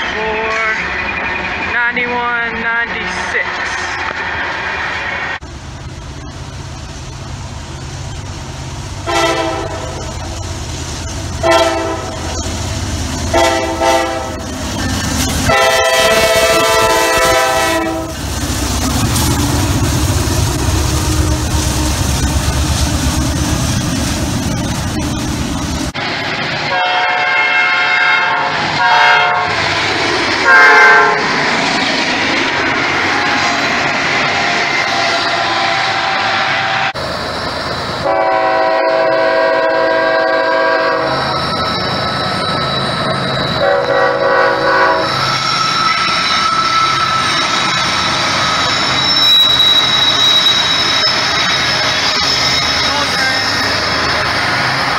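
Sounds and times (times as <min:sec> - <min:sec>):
locomotive engine rumble: 0:00.0 - 0:54.9
locomotive air horn blasts: 0:09.1 - 0:10.0, 0:11.4 - 0:12.2, 0:13.3 - 0:14.4, 0:15.5 - 0:18.2, 0:26.7 - 0:29.6, 0:30.5 - 0:31.2, 0:38.0 - 0:41.1, 0:43.6 - 0:45.1
train horn blasts: 0:09.1 - 0:10.0, 0:11.4 - 0:12.2, 0:13.3 - 0:14.4, 0:15.4 - 0:18.2, 0:26.7 - 0:29.6, 0:30.4 - 0:31.2, 0:35.4 - 0:37.0, 0:38.0 - 0:41.1, 0:43.6 - 0:45.1.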